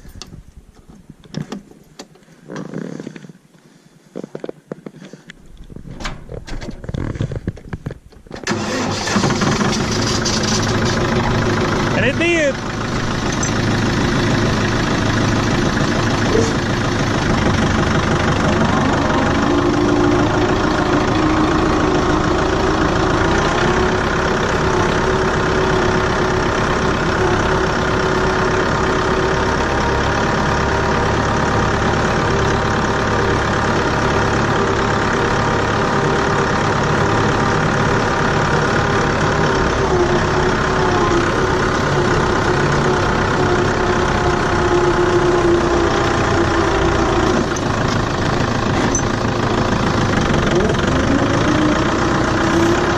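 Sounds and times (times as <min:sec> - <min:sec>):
tractor engine running: 0:04.4 - 0:52.9.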